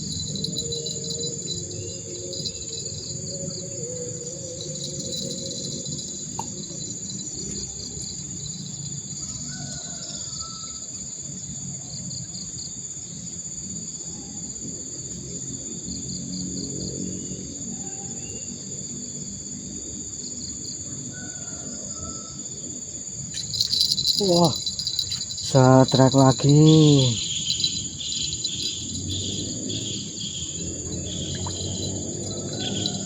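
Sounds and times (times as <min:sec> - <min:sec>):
insects shrilling: 0:00.0 - 0:07.4, 0:23.2 - 0:33.0.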